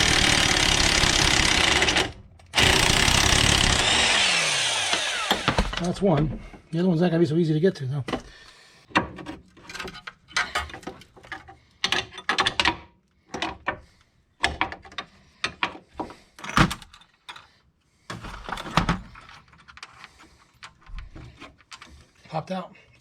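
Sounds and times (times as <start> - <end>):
metal tools clanking: 16.4 - 17.5.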